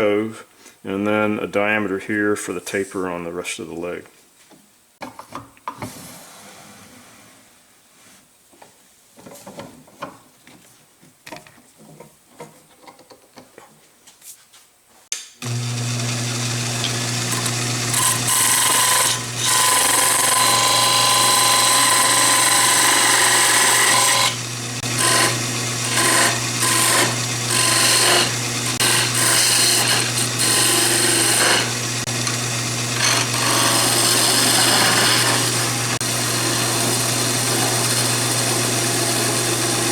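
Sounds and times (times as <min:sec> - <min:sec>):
lathe motor humming: 0:15.4 - 0:39.9
tool shaving wood hiss: 0:15.4 - 0:39.9.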